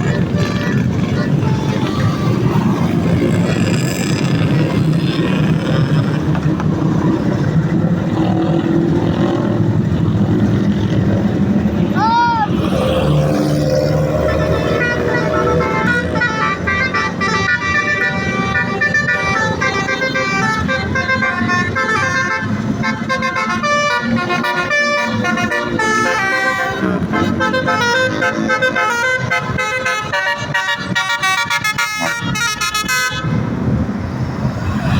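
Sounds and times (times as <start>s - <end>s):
musical vehicle horn melody: 0.0s - 3.4s, 14.0s - 33.4s.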